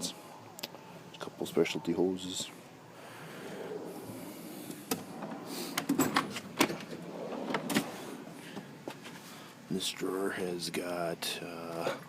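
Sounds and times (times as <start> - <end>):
metal drawers sliding: 4.1 - 9.2.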